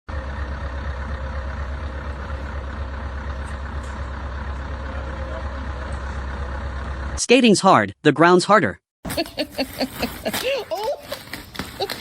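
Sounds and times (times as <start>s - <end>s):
heavy machinery engine rumble: 0.1s - 7.2s.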